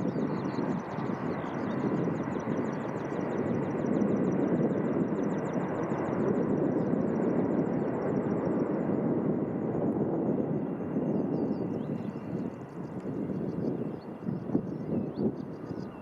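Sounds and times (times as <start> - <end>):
jet engines running: 0.0 - 16.0.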